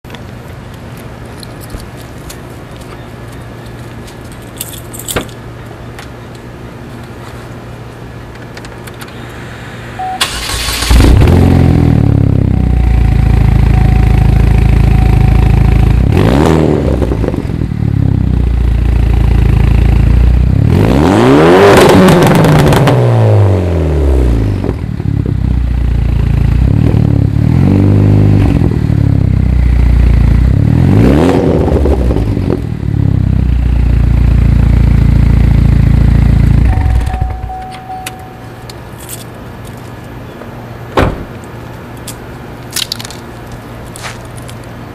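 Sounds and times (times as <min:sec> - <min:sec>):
car engine starting and idling: 0:08.1 - 0:20.7, 0:21.8 - 0:42.2
car engine revving: 0:10.2 - 0:24.6.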